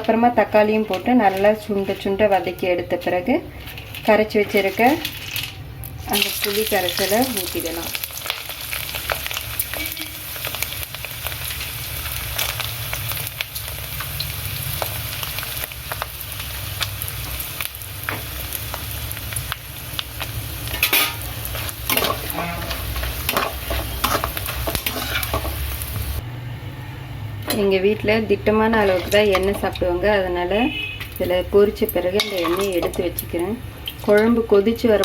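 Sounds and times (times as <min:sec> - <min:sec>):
vegetables sizzling in oil: 0:00.0 - 0:26.2, 0:27.5 - 0:35.0
spoon stirring in pan: 0:00.5 - 0:02.8, 0:20.6 - 0:26.2, 0:28.7 - 0:30.0
spoon scraping pan: 0:00.5 - 0:05.6, 0:20.6 - 0:26.0, 0:27.5 - 0:30.0.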